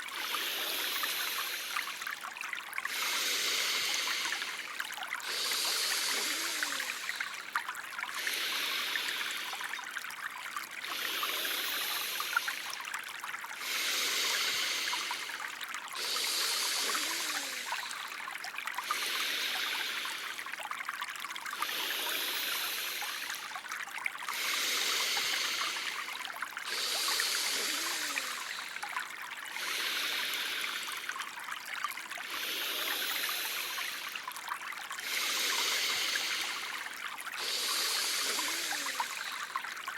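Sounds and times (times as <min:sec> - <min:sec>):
trickling stream water: 0:00.0 - 0:39.9
high hiss: 0:00.2 - 0:02.0, 0:02.9 - 0:04.6, 0:05.3 - 0:07.3, 0:10.9 - 0:12.7, 0:13.6 - 0:15.3, 0:16.0 - 0:18.0, 0:18.9 - 0:20.2, 0:21.7 - 0:23.4, 0:24.4 - 0:26.0, 0:26.7 - 0:28.8, 0:29.6 - 0:30.9, 0:32.3 - 0:34.1, 0:35.0 - 0:36.8, 0:37.4 - 0:39.5.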